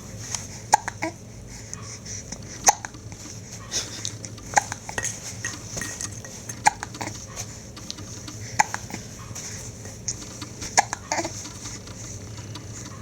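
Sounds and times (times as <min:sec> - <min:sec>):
faint little clicks: 0:02.6 - 0:13.0.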